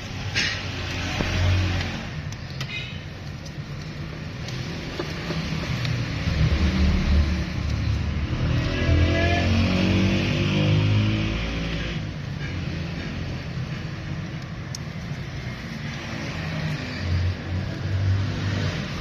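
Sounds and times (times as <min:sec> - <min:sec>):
vehicle engine revving: 0:04.5 - 0:13.6.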